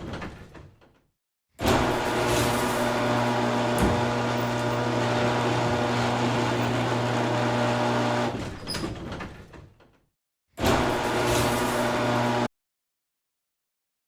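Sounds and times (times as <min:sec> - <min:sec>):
garage door motor hum: 0:01.6 - 0:09.4, 0:10.6 - 0:12.5.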